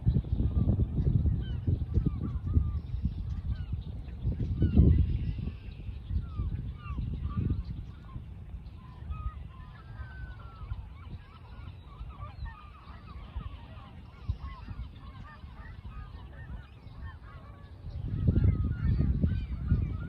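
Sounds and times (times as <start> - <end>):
geese honking: 9.1 - 20.0.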